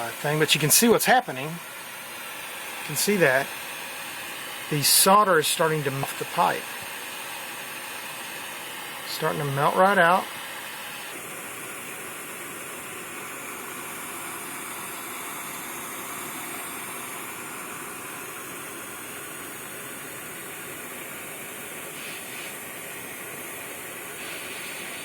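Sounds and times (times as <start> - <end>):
torch flame hissing: 0.0 - 25.0.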